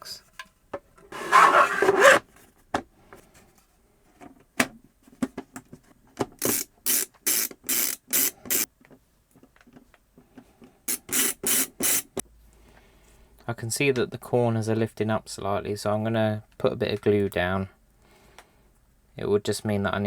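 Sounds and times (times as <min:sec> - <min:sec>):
plastic panels scraping: 0:01.1 - 0:02.2.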